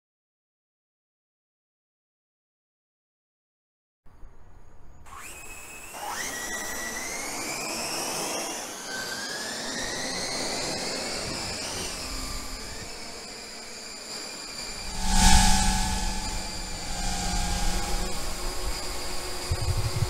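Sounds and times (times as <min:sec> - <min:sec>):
drone motors whining: 0:08.6 - 0:20.0.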